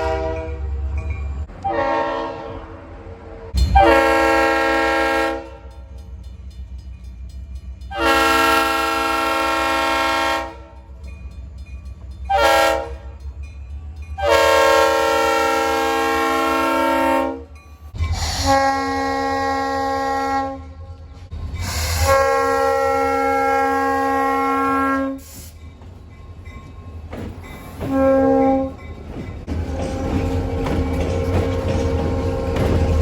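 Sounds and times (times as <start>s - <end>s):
train air horn chord: 0.0s - 0.6s, 1.6s - 5.7s, 7.9s - 10.8s, 12.3s - 13.1s, 14.2s - 17.5s, 18.3s - 20.9s, 21.9s - 25.3s
low rumble of passing train: 0.0s - 33.0s.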